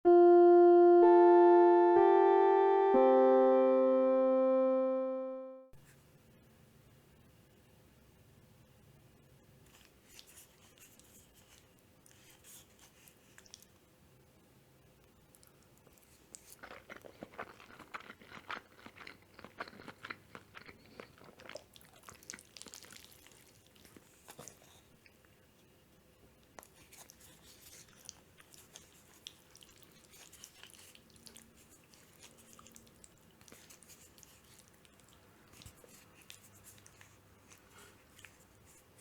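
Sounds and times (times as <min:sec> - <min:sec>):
close chewing with wet clicks: 0:09.7 - 0:13.8, 0:15.0 - 0:25.4, 0:26.4 - 0:39.0.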